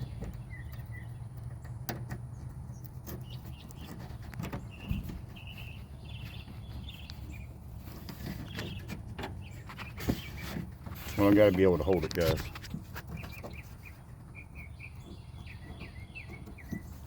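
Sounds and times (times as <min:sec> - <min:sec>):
latch clicks and knocks: 0:00.0 - 0:03.2.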